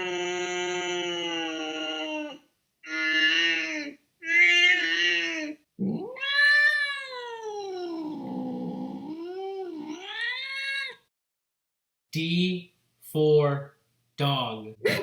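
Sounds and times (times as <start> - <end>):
cat yowling: 0.0 - 8.2, 9.7 - 11.0.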